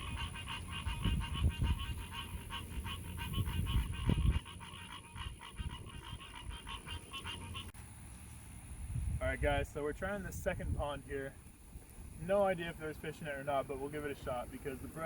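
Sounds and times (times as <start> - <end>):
frogs calling: 0.0 - 7.8.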